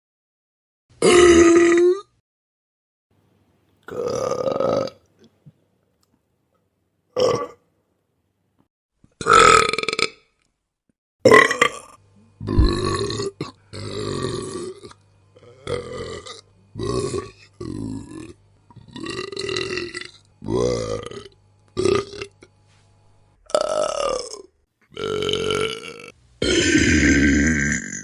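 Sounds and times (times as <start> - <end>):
person burping: 1.0 - 2.2, 3.9 - 5.0, 7.2 - 7.6, 9.2 - 10.3, 11.2 - 22.5, 23.4 - 28.0.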